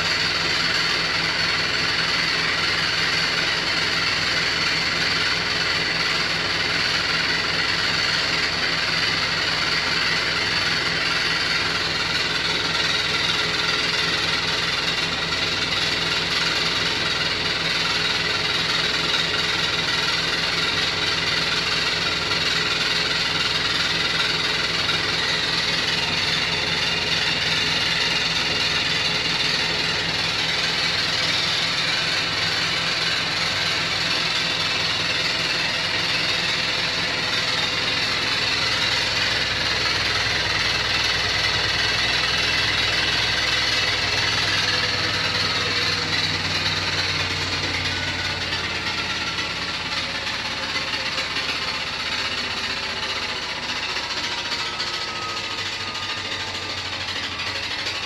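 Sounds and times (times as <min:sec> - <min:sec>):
washing machine rattling and knocking: 0:00.0 - 0:58.0.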